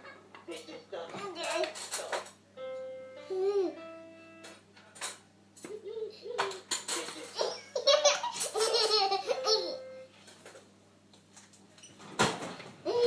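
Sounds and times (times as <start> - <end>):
baby laughing: 3.3 - 3.8, 5.6 - 9.9.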